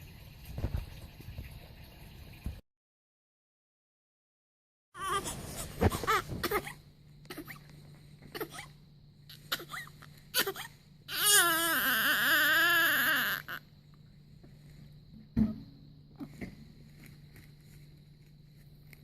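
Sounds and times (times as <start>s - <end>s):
baby crying: 5.0s - 7.6s, 9.3s - 13.7s.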